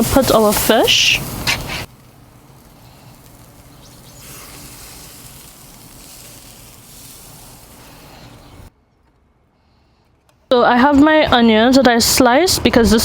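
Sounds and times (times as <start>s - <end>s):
fish sizzling on a grill: 0.0s - 8.7s.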